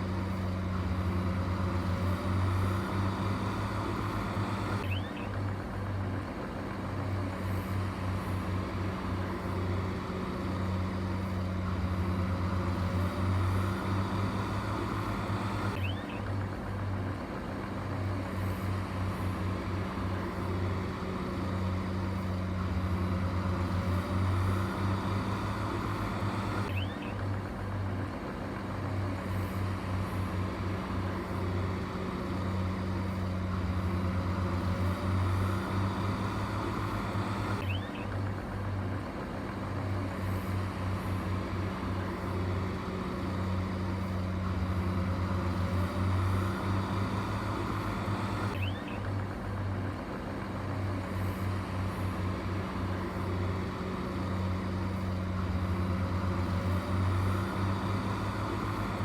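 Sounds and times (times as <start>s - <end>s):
heavy diesel engine throbbing: 0.0s - 59.0s.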